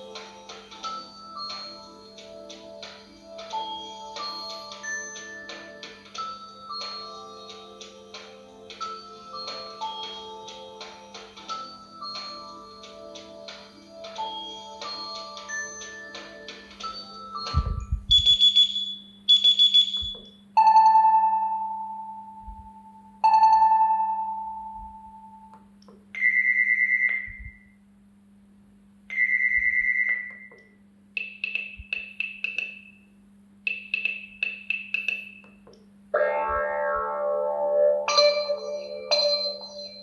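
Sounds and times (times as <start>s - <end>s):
faint low hum: 16.2s - 19.3s, 19.9s - 32.2s
phone ringtones: 36.2s - 40.0s.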